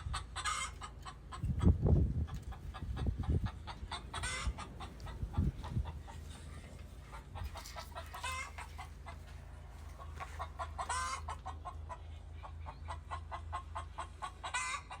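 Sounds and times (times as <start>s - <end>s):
chickens clucking: 0.0s - 15.0s
steady low hum: 1.4s - 10.8s.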